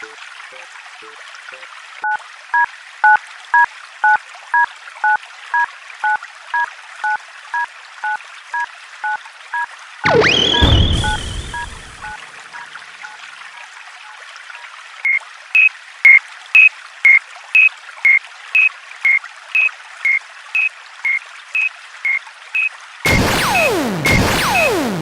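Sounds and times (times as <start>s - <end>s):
low two-tone ding: 10.2s - 12.2s.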